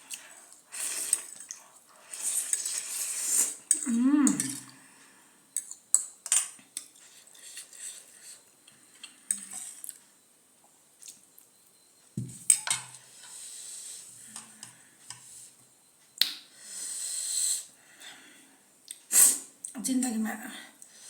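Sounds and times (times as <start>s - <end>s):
cutlery clinking on dishes: 12.3s - 13.0s
hiss: 16.6s - 17.7s, 19.1s - 19.5s.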